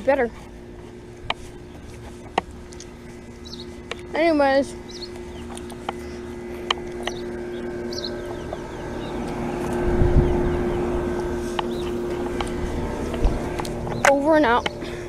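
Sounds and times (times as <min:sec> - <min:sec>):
heat pump unit humming: 0:00.0 - 0:15.0
low rumble: 0:00.0 - 0:15.0
bird chirps: 0:02.8 - 0:03.8, 0:04.7 - 0:12.2.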